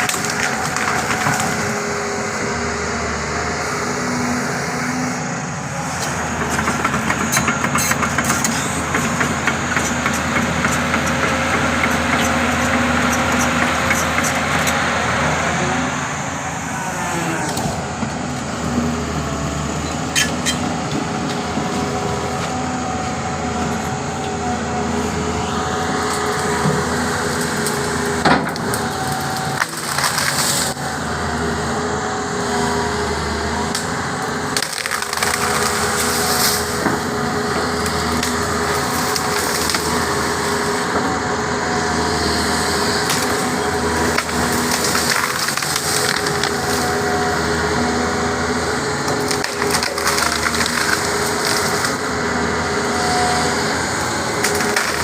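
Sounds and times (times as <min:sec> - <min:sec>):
wood cracking and splintering: 0:00.0 - 0:01.9, 0:26.1 - 0:30.8, 0:33.6 - 0:41.0, 0:42.6 - 0:47.1, 0:49.0 - 0:55.0
excavator diesel engine running: 0:00.0 - 0:55.0.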